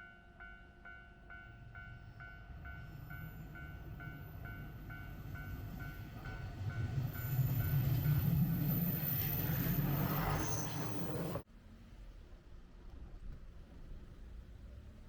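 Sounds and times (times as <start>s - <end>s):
level crossing warning bell: 0.0s - 9.0s
diesel train rumbling: 1.7s - 11.5s.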